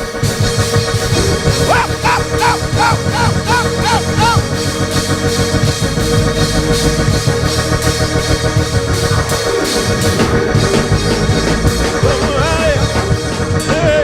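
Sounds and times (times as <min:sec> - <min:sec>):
organ chords: 0:00.0 - 0:14.0
drum kit beat: 0:01.5 - 0:04.6.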